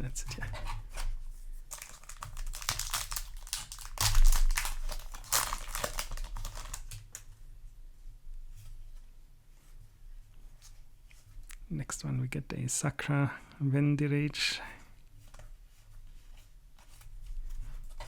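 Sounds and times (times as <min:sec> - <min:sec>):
foil wrapper crinkling and tearing: 0:01.7 - 0:07.2.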